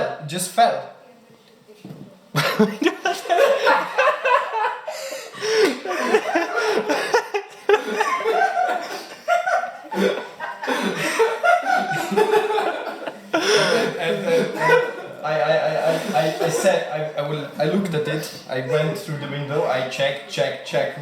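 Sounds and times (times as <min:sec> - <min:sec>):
people laughing: 0:02.4 - 0:17.8, 0:18.5 - 0:19.8.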